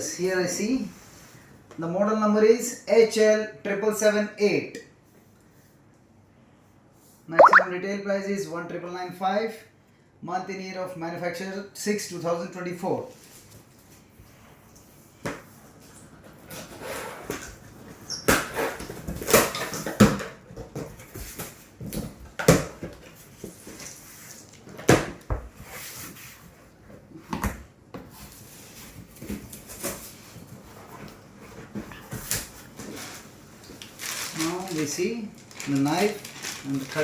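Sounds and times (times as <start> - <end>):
cardboard and wrapping rustling: 28.2 - 37.0.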